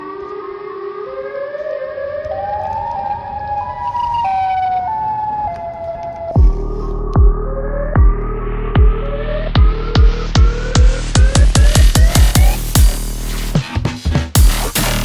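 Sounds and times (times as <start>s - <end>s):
siren-like electronic tone: 0.0s - 12.9s
heavy bass hit: 6.4s - 13.6s, 14.4s - 15.0s.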